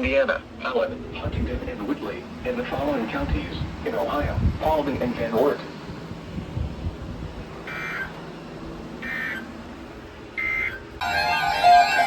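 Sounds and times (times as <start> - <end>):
warbling data bursts: 7.6 - 8.1, 9.0 - 9.6, 10.4 - 12.0.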